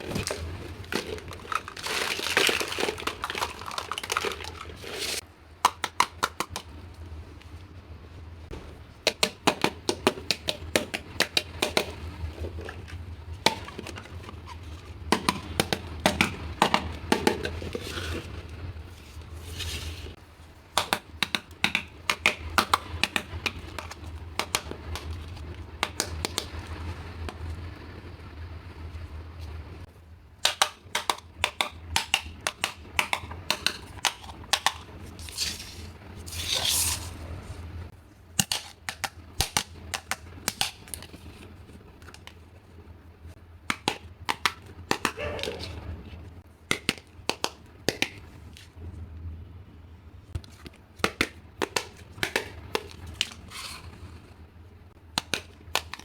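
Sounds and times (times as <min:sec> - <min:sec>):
toy pieces clicking and tapping: 0:30.4 - 0:34.9.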